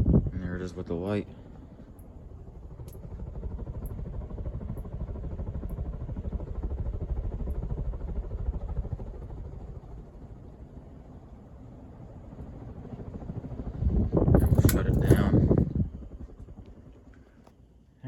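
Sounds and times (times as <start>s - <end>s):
ceiling fan running: 0.0s - 18.0s.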